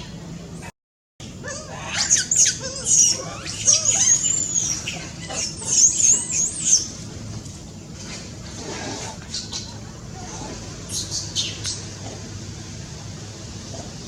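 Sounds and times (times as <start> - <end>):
baby monkey screaming: 1.3 - 6.9.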